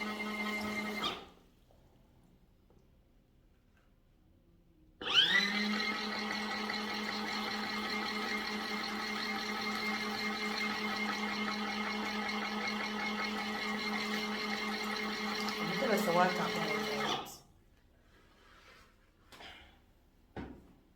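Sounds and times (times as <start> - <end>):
washing machine motor humming: 0.0 - 1.3, 5.0 - 17.3.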